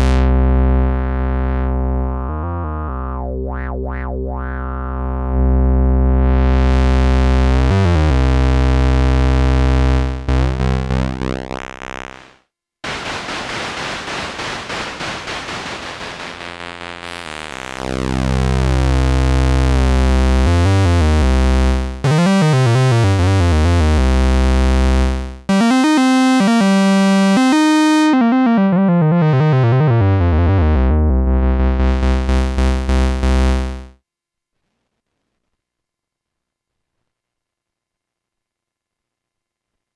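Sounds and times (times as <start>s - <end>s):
synthesizer bass tones: 1.2s - 6.4s, 13.0s - 33.8s
noisy synthesizer texture: 12.9s - 19.2s
gliding synthesizer notes: 25.5s - 31.8s.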